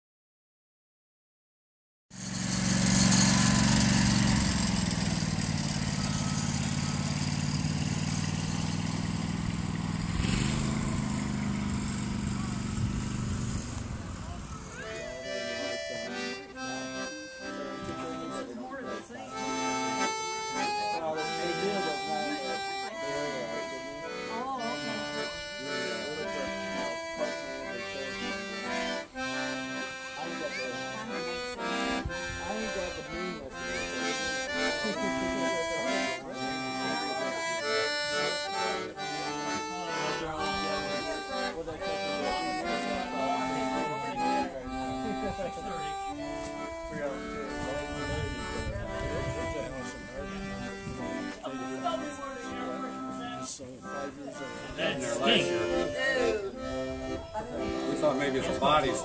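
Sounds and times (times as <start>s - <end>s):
accordion chords: 2.1s - 59.0s
engine running: 2.2s - 59.0s
faint people talking: 2.8s - 59.0s.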